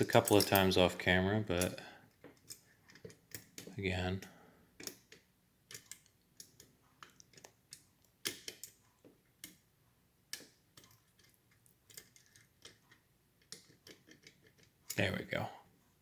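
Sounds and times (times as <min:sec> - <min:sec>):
metallic clicks of lock picking: 0:01.6 - 0:03.7, 0:04.8 - 0:08.8, 0:10.3 - 0:15.0.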